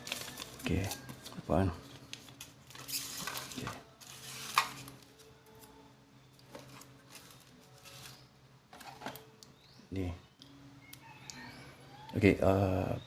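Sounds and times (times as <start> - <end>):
packaging rustling: 0.0 - 5.2, 6.5 - 8.2.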